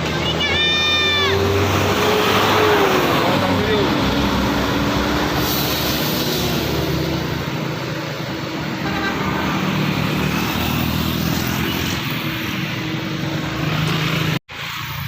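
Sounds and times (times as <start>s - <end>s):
heavy vehicle passing: 0.0s - 15.0s
vehicle horn: 8.7s - 9.6s.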